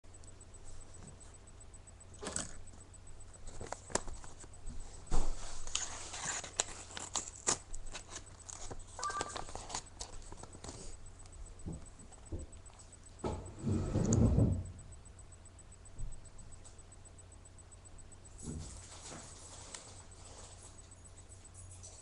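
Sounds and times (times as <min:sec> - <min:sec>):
packaging rustling and crinkling: 0:03.5 - 0:11.0.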